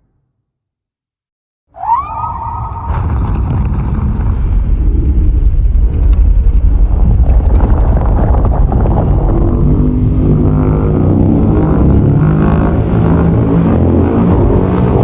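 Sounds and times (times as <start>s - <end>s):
monster cry: 1.8s - 3.4s
loud low rumble: 1.8s - 12.5s.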